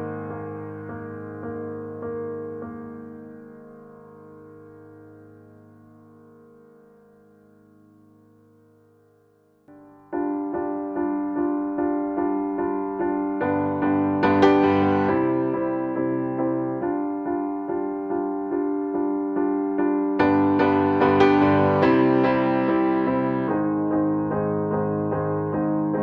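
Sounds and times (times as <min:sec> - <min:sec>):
keyboard music repeated notes: 0:09.7 - 0:26.0.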